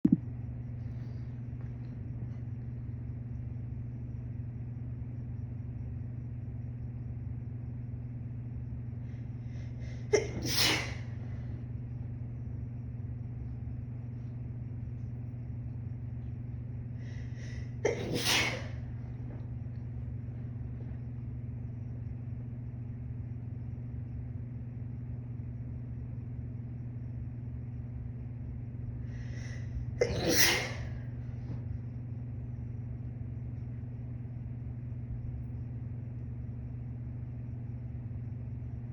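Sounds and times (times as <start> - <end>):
steady low hum: 0.0 - 38.9
woman sneezing: 10.0 - 11.2, 17.7 - 18.8, 30.0 - 31.0.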